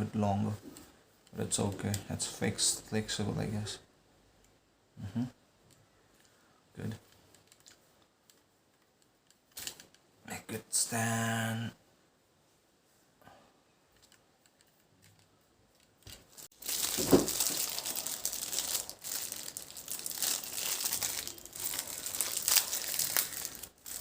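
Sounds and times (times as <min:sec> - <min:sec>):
crinkling and rustling: 0:13.9 - 0:24.0.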